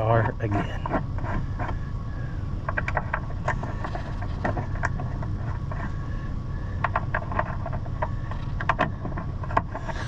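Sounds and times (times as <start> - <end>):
steady low rumble: 0.0 - 10.0
light clicks and clinks of metal parts: 6.8 - 10.0.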